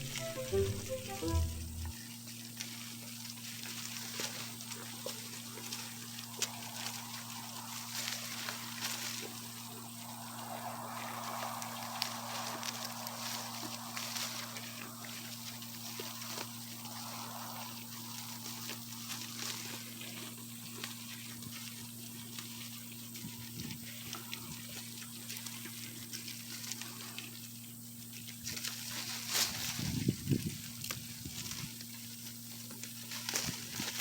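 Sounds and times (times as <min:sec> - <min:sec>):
goats chewing rustling leaves: 0:02.0 - 0:34.0
steady low hum: 0:05.0 - 0:20.6.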